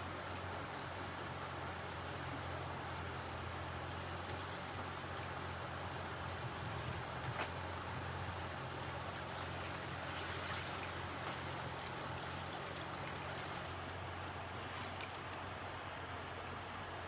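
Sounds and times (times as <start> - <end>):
flowing water rushing: 0.0 - 17.0
low even hum: 0.0 - 17.0.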